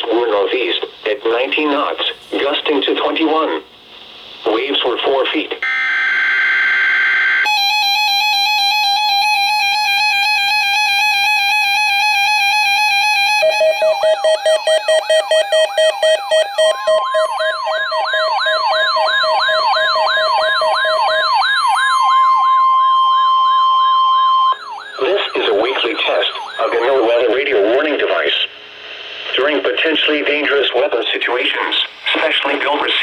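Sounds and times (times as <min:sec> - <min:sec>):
steady high tone: 0:13.2 - 0:27.4
pulsing beep tone: 0:13.4 - 0:21.2.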